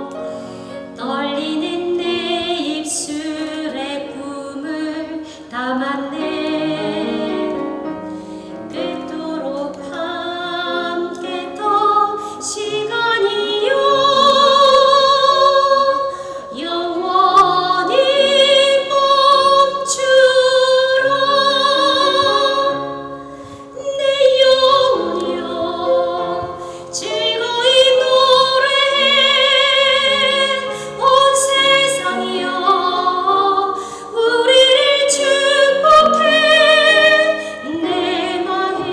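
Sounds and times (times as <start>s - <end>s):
instrumental accompaniment: 0.0s - 38.9s
woman singing operatically: 23.8s - 38.9s.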